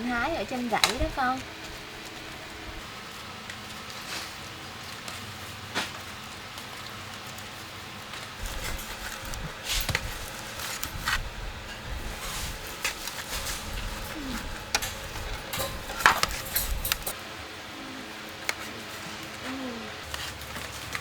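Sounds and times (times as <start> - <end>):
utensil clinking against pan: 13.3 - 17.2.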